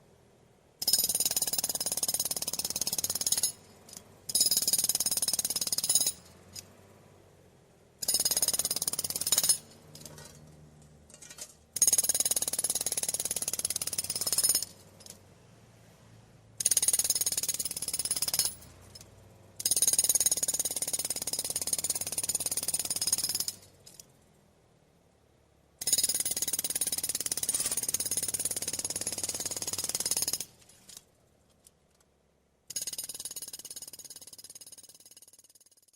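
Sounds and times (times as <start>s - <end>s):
jackhammer hammering: 8.0s - 9.7s, 11.8s - 14.8s, 16.6s - 18.6s, 25.8s - 30.5s.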